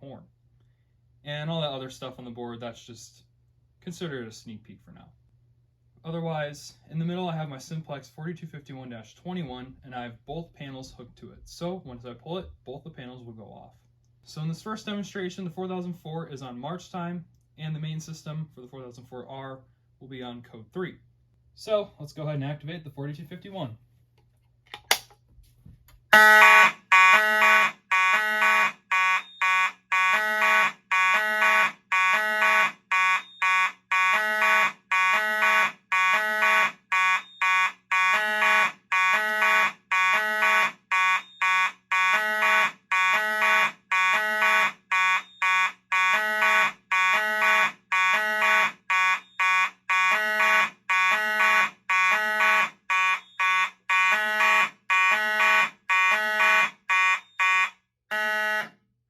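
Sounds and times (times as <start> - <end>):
pulsing fire alarm horns: 26.2 - 58.8.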